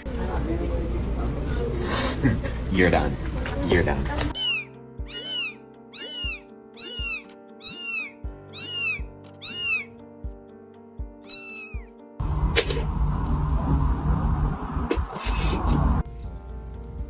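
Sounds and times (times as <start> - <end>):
music of cat meows: 4.3 - 12.8
low bass hits: 12.2 - 15.1
loud noisy sound: 12.2 - 16.0.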